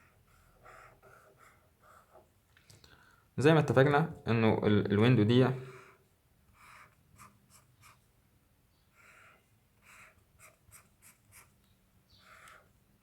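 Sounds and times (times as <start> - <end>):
pen scratching on paper: 0.0 - 2.3, 5.6 - 8.0, 8.9 - 11.6, 12.2 - 12.8.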